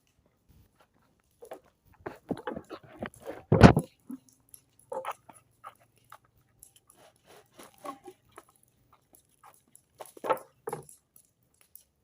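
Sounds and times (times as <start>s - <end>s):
dog pitched vocal noises: 1.4s - 10.4s.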